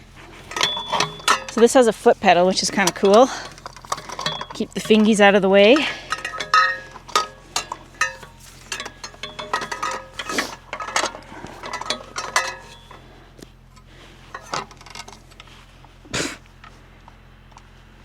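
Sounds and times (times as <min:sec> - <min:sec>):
metallic clinks and knocks: 0:00.3 - 0:13.2, 0:14.3 - 0:15.4.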